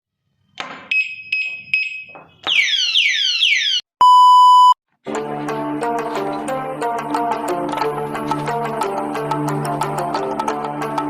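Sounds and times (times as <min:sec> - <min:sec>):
loud steady beep: 0:00.9 - 0:02.2, 0:04.0 - 0:04.8
music: 0:05.0 - 0:11.0.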